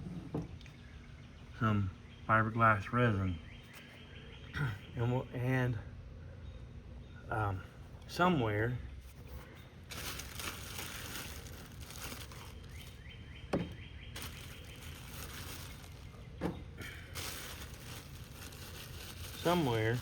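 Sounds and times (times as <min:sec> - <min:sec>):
rustling and handling noises: 0:09.0 - 0:20.0.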